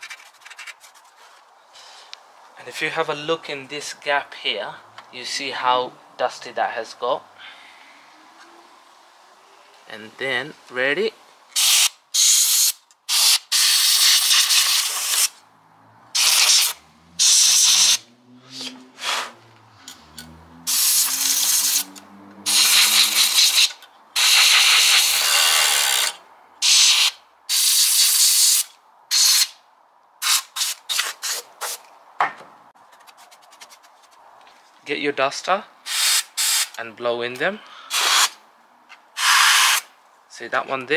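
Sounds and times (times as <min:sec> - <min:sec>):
compressed air hissing blasts: 0:11.5 - 0:15.4, 0:16.2 - 0:19.4, 0:20.6 - 0:29.6, 0:30.2 - 0:31.8, 0:35.8 - 0:36.8, 0:37.9 - 0:38.4, 0:39.2 - 0:39.9.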